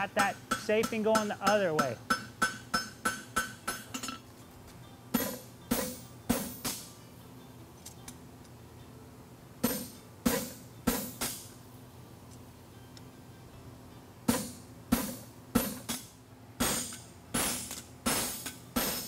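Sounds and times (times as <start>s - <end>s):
hammer striking horseshoe on anvil: 0.0s - 4.2s, 5.2s - 6.9s, 9.6s - 11.5s, 14.3s - 19.0s.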